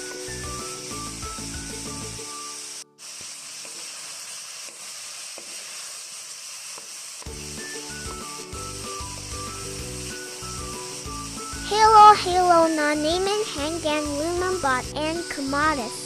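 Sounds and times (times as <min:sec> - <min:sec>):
background music: 0:00.0 - 0:02.8, 0:07.3 - 0:16.0
food sizzling in a pan: 0:00.0 - 0:16.0.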